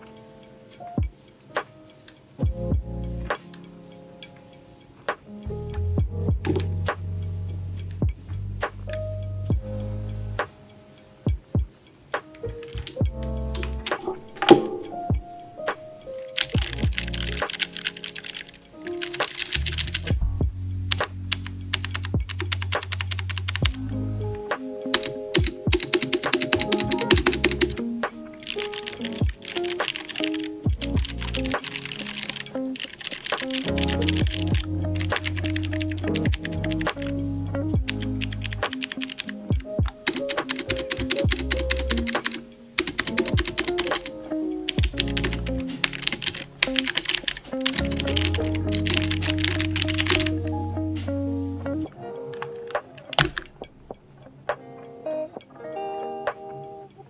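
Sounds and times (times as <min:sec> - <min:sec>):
background music: 0:00.0 - 0:57.0
background music with bass line: 0:02.4 - 0:03.4, 0:05.4 - 0:10.5, 0:12.5 - 0:15.9, 0:16.6 - 0:17.5, 0:19.6 - 0:24.6, 0:30.7 - 0:31.6, 0:33.7 - 0:38.8, 0:44.8 - 0:45.8, 0:47.5 - 0:52.0
clicky mechanical keyboard typing: 0:12.7 - 0:20.2, 0:21.3 - 0:23.8, 0:24.9 - 0:27.8, 0:28.4 - 0:37.2, 0:37.8 - 0:50.4, 0:52.2 - 0:53.7.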